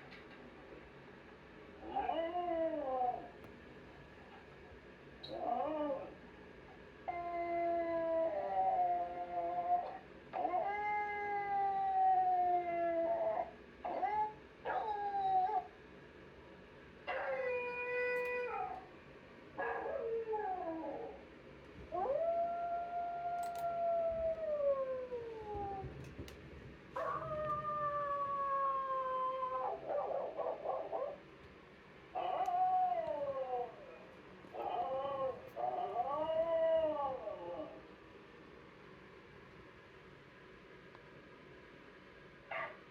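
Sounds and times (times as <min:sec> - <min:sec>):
dog howling and whining: 0:01.8 - 0:03.4, 0:05.2 - 0:06.2, 0:07.1 - 0:15.8, 0:17.1 - 0:19.0, 0:19.6 - 0:21.3, 0:21.9 - 0:26.3, 0:27.0 - 0:31.2, 0:32.2 - 0:37.9.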